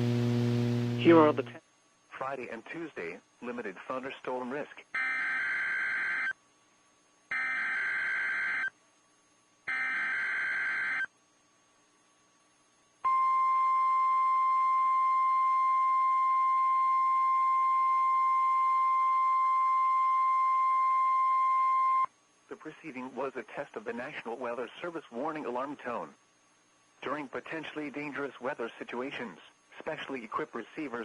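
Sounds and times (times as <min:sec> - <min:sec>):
steady warning alarm tone: 0:07.3 - 0:08.7, 0:09.7 - 0:11.1, 0:13.1 - 0:22.1.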